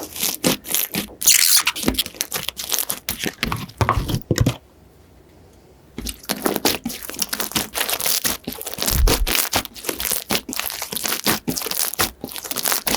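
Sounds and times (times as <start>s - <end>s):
slime squeezed by hand crackling: 0.0s - 3.2s, 6.1s - 12.9s.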